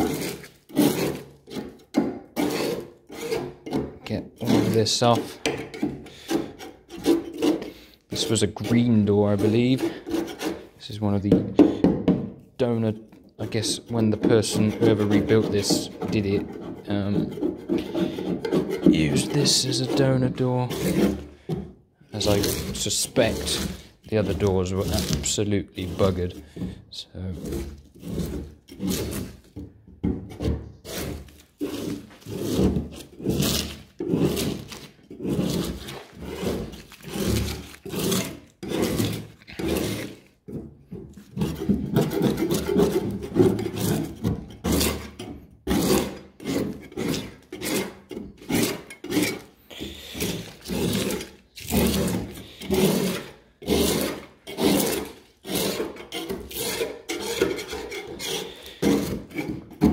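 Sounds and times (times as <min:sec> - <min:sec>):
scraper stripping paint off steel: 0:00.0 - 0:10.7, 0:30.7 - 0:40.4, 0:41.3 - 0:59.6.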